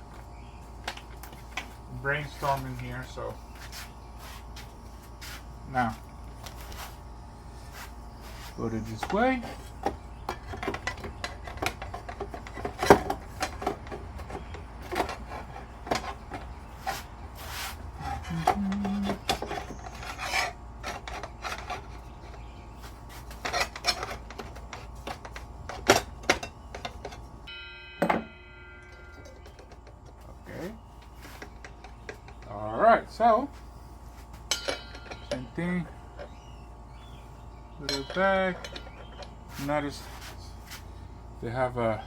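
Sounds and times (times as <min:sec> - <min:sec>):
brief ringing tone: 0:27.5 - 0:29.4.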